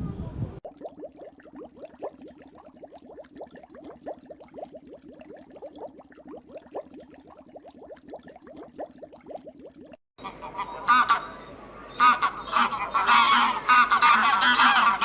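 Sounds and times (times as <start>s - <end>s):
animals chattering calls: 10.2s - 15.0s.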